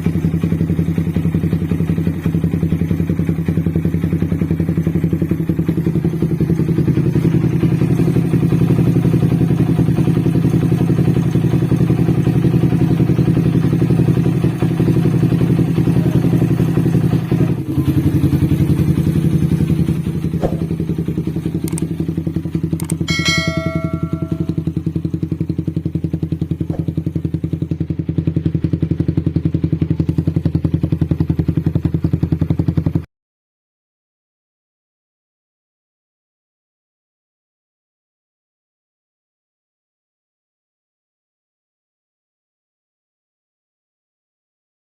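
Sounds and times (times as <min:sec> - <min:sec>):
motorcycle engine running: 0:00.0 - 0:33.1.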